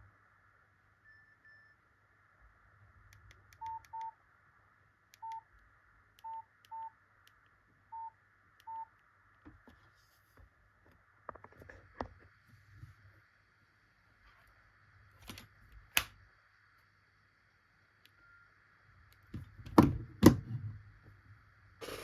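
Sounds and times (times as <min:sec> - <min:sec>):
phone keypad click and beep: 0:03.6 - 0:04.2, 0:05.2 - 0:05.4, 0:08.0 - 0:08.9.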